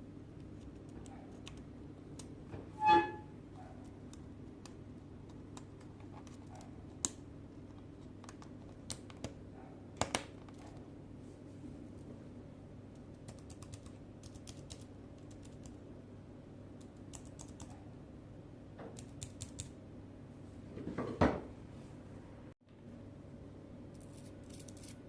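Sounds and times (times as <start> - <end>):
short pitched squeal: 2.8 - 3.3
laptop keys clicking: 12.9 - 15.8, 16.8 - 17.8, 19.0 - 19.7.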